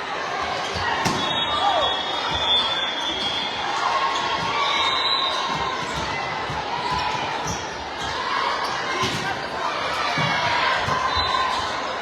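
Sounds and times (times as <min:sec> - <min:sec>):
echoing voices in a hall: 0:00.0 - 0:12.0
volleyball thumping: 0:00.7 - 0:02.6.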